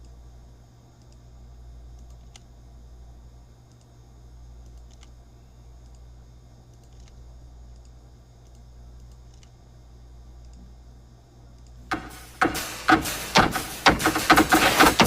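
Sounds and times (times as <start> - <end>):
low electrical hum: 0.0 - 15.0
computer keyboard and mouse clicks: 2.0 - 2.5, 3.6 - 3.9, 4.6 - 5.2, 6.7 - 9.6.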